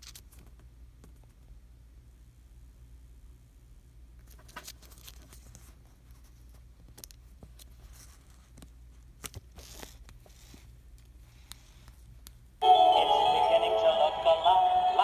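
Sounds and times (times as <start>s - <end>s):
faint clicks and rustles: 4.2s - 12.5s.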